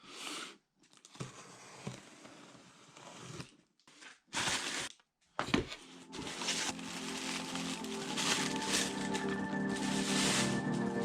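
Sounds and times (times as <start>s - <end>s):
rustling handling noise: 5.6s - 11.0s.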